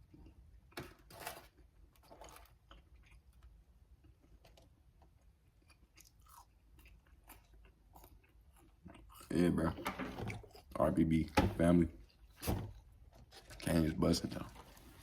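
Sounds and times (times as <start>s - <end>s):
person chewing food: 1.6s - 11.0s.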